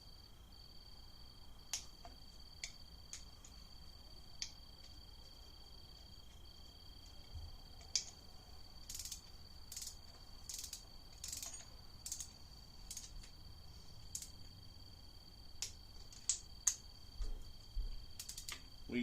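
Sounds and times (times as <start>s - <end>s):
faint high whine: 0.0s - 19.0s
torque wrench clicking: 8.8s - 13.3s, 14.1s - 14.4s, 18.2s - 18.7s.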